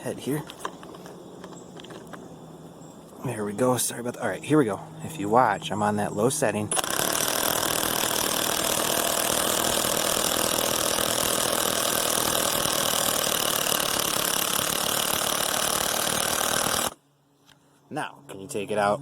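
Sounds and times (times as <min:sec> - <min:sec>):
impact driver hammering: 0:06.7 - 0:17.0.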